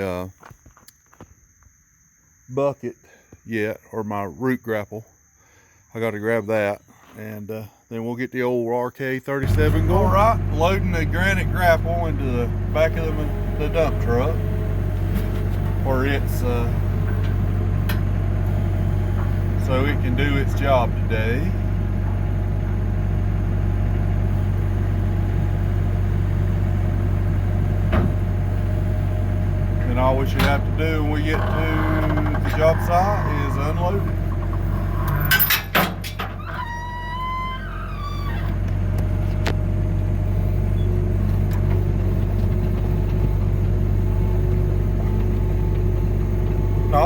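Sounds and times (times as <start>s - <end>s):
truck engine droning: 9.4s - 47.0s.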